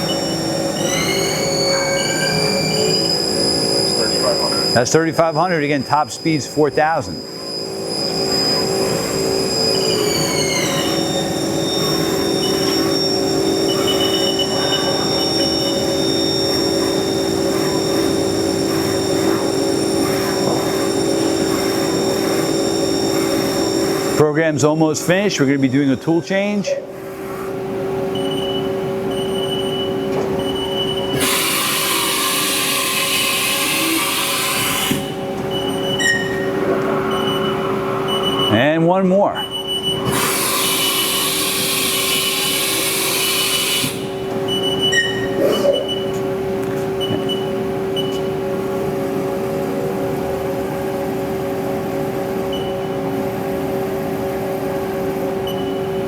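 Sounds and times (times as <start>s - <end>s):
milling machine hum: 0.0s - 56.0s.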